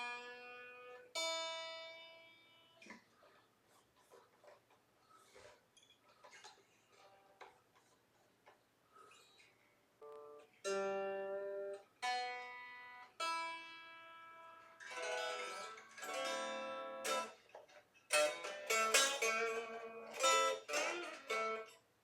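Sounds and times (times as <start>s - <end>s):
electric guitar chords strummed: 10.0s - 17.3s
electric guitar strings plucked: 10.0s - 17.3s, 18.1s - 21.7s.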